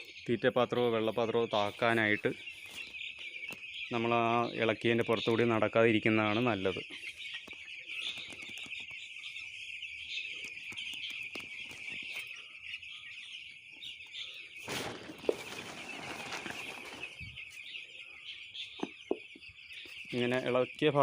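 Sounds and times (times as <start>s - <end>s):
chicks peeping: 0.0s - 21.0s
rustling scraping noise: 14.6s - 17.6s.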